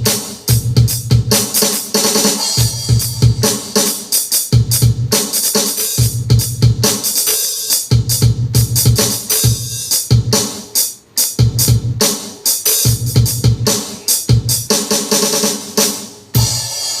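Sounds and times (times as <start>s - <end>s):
bright cymbal: 16.4s - 17.0s.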